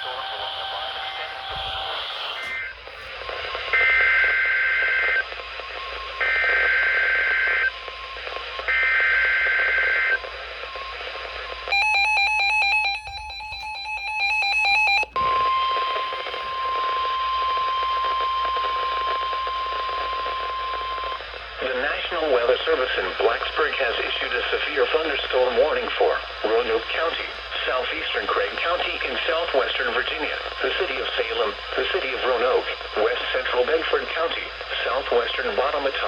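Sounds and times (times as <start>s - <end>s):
steady high alarm tone: 0.0s - 2.9s, 11.7s - 16.5s.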